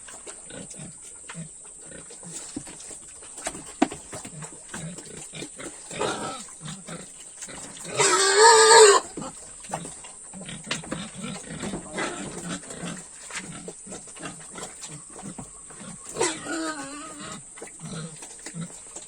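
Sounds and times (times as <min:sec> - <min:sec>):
pigs chomping feed: 0:00.0 - 0:19.0
pigs grunting: 0:00.0 - 0:19.0
pig high call: 0:07.9 - 0:09.3.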